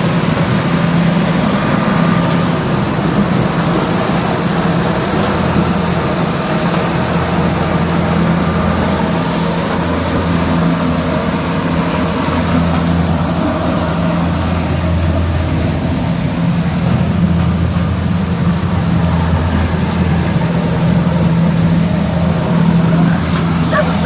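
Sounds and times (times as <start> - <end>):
heavy farm machinery engine hum: 0.0 - 24.0.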